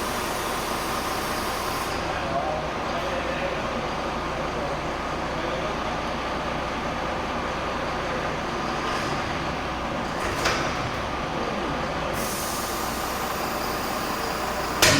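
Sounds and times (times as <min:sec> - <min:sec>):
steady machine noise: 0:08.5 - 0:14.9.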